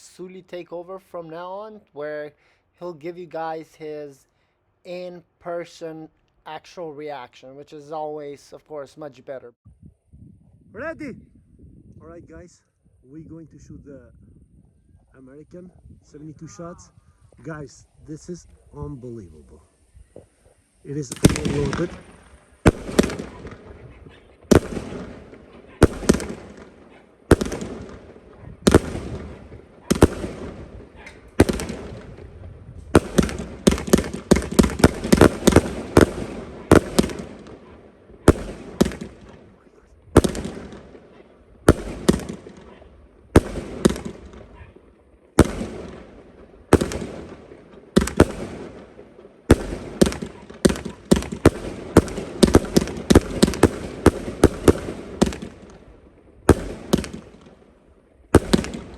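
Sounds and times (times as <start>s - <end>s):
firework cake shots: 20.9s - 39.6s, 40.2s - 44.5s, 45.4s - 55.8s, 56.5s - 57.5s, 58.4s - 58.9s.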